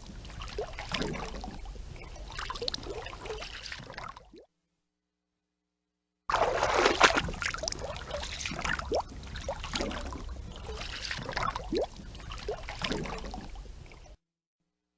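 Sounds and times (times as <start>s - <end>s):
water sloshing and dripping: 0.0s - 4.5s, 6.3s - 14.2s
water splash: 6.3s - 13.5s.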